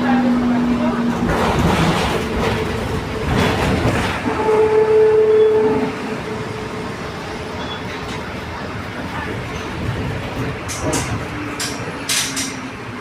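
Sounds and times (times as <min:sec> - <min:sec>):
bus diesel engine running: 0:00.0 - 0:05.0.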